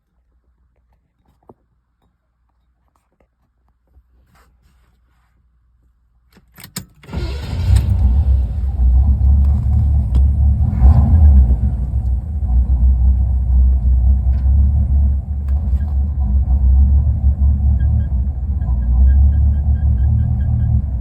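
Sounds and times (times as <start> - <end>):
car engine idling roughly: 7.5 - 21.0.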